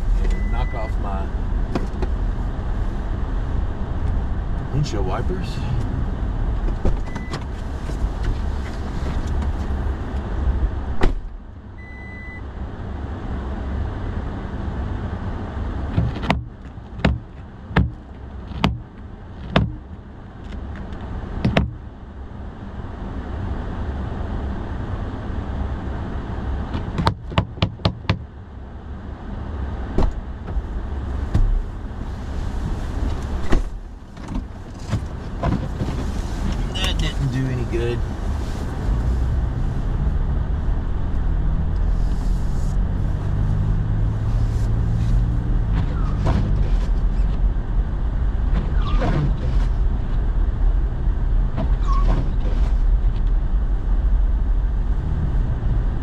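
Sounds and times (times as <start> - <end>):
truck door shutting: 10.9 - 11.4, 29.9 - 30.6, 33.0 - 37.0.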